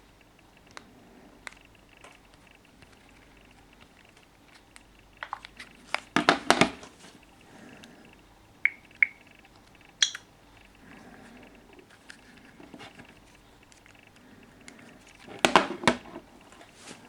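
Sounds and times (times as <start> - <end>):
clicks and knocks handling phones: 0.5 - 17.0
phone beeps: 8.1 - 11.7.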